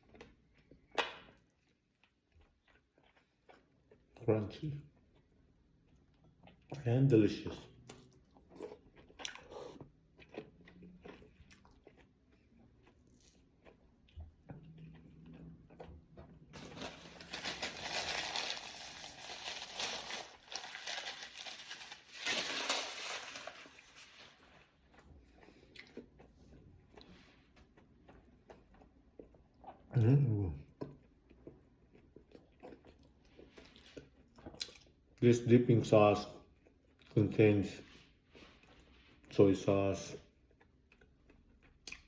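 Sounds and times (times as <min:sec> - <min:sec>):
person chewing crunchy fish bones: 0:00.0 - 0:04.2, 0:07.8 - 0:29.9, 0:30.7 - 0:35.1, 0:40.3 - 0:42.0.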